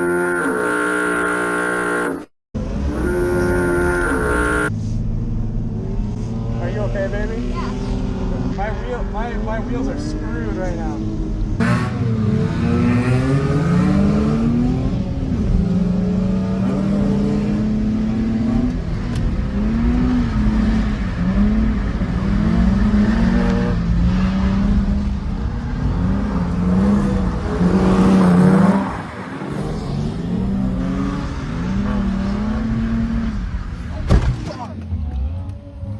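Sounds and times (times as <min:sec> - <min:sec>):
car engine revving: 0:00.0 - 0:35.9.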